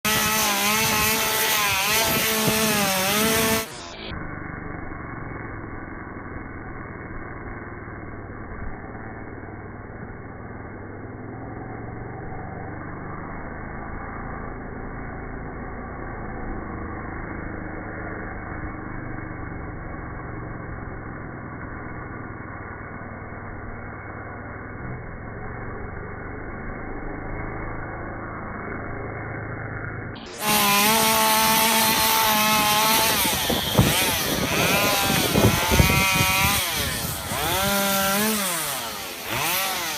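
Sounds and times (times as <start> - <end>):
chainsaw revving: 0.0 - 6.0, 25.3 - 39.9.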